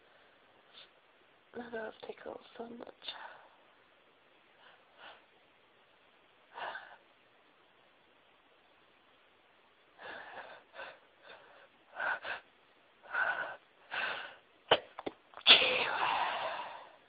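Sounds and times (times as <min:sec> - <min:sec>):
woman sneezing: 0:14.7 - 0:16.3.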